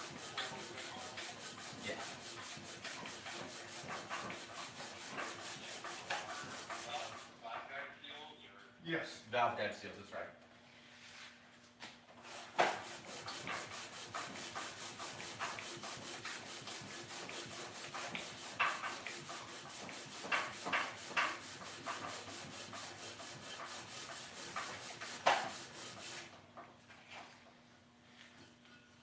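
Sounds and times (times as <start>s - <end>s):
hand scrubbing metal part: 0.0s - 7.3s, 12.4s - 26.3s.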